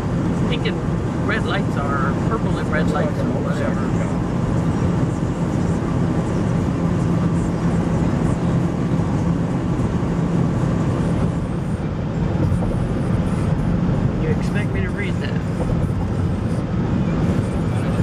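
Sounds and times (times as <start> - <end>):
vehicle road and engine noise: 0.0 - 18.0.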